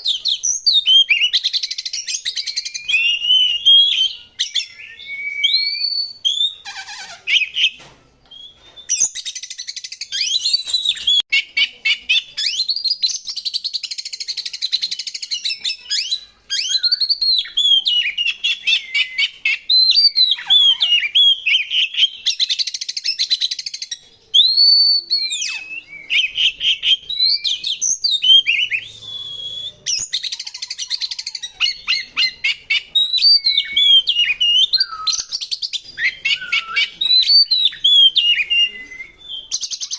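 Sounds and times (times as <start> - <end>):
bird singing whistles: 0.0 - 39.9
bird harsh rasping chatter: 5.6 - 7.8, 13.8 - 38.9.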